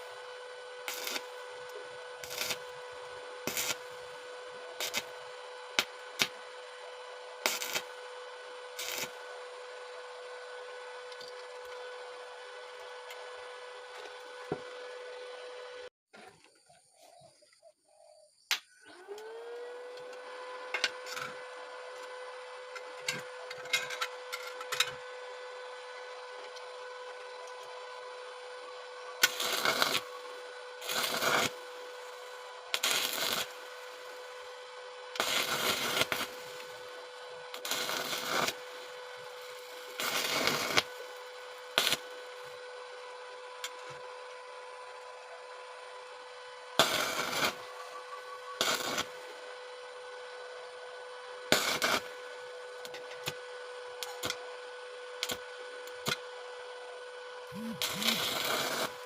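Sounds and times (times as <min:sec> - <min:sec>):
welding arc crackle: 0:00.0 - 0:09.5, 0:29.2 - 0:42.6, 0:46.8 - 0:50.0, 0:51.5 - 0:53.4, 0:54.0 - 0:54.4, 0:55.1 - 0:56.3, 0:57.4 - 0:59.0
welder hum rising in pitch: 0:00.0 - 0:15.9, 0:18.4 - 0:59.0.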